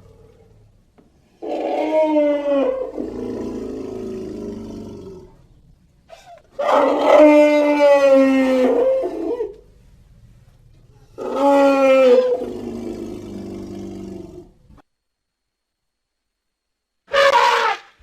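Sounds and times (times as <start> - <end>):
elephant trumpeting: 1.4 - 4.4, 6.1 - 9.6, 11.2 - 13.3, 17.1 - 18.0.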